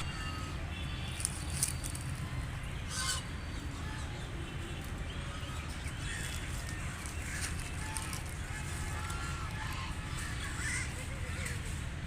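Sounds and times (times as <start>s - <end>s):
ducks quacking: 2.8s - 3.4s.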